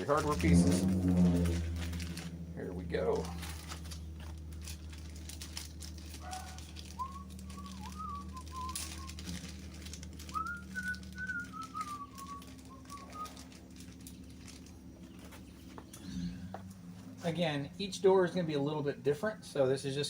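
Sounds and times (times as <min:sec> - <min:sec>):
steady low hum: 0:00.0 - 0:20.0
person whistling a tune: 0:07.0 - 0:09.4, 0:10.3 - 0:13.4.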